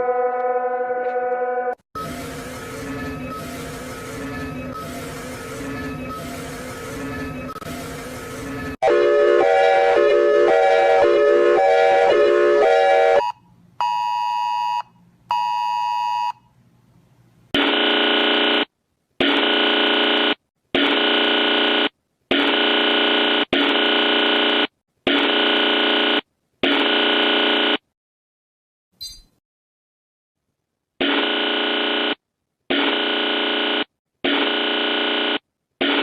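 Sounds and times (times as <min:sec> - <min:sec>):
harsh buzzer blasts: 0:17.6 - 0:27.8, 0:31.0 - 0:36.0.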